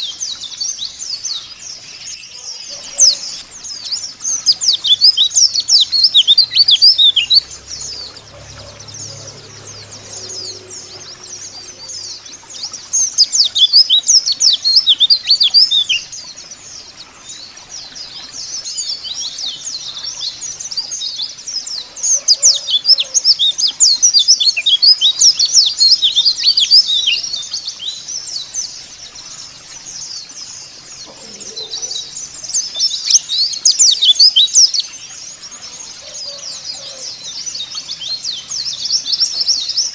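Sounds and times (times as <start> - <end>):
white-eye twittering song: 0.0 - 39.9.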